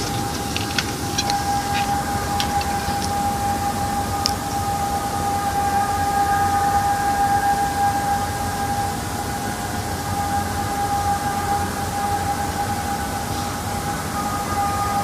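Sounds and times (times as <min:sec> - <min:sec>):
background hiss: 0:00.0 - 0:15.0
steady droning hum: 0:00.0 - 0:15.0.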